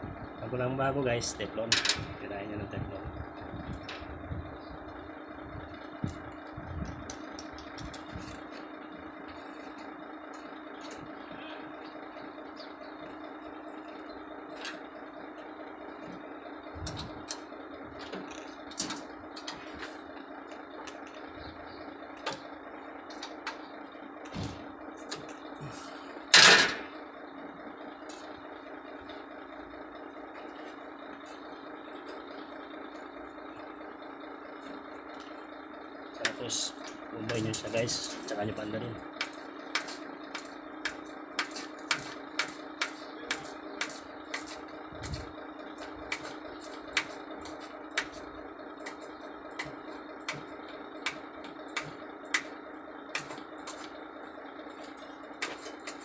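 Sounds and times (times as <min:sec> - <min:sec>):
mechanical hum: 0:00.0 - 0:56.0
hand tools clicking on metal: 0:39.2 - 0:44.6, 0:46.1 - 0:48.2, 0:53.2 - 0:53.9, 0:54.8 - 0:56.0.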